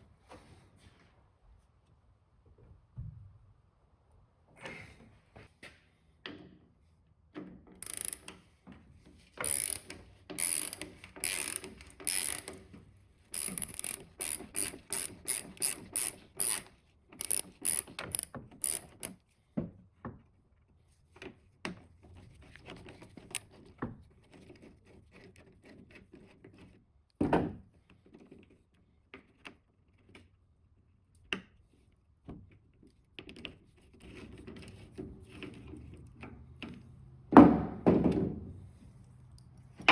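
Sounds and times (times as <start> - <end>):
ratchet wrench clicking: 7.8 - 8.4, 9.4 - 12.6, 13.3 - 19.2.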